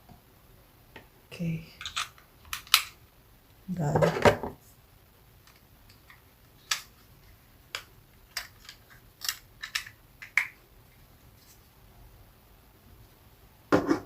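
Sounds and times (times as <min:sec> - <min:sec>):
hard plastic parts clicking: 0:07.7 - 0:10.6.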